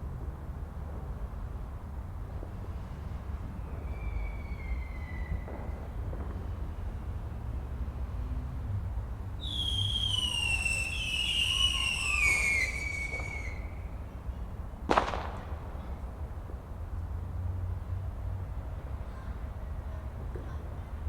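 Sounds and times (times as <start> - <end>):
firework whistling: 2.8 - 6.6, 9.4 - 14.0
firework bang: 4.6 - 6.9, 14.9 - 16.1.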